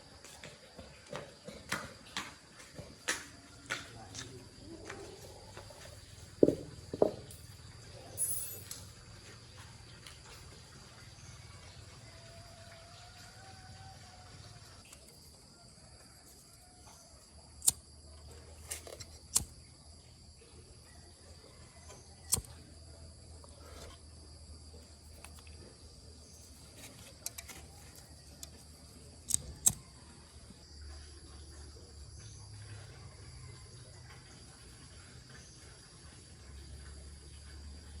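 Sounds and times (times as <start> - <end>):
sharp clicks: 17.6 - 17.8, 18.9 - 19.5, 22.3 - 22.6, 29.2 - 29.8.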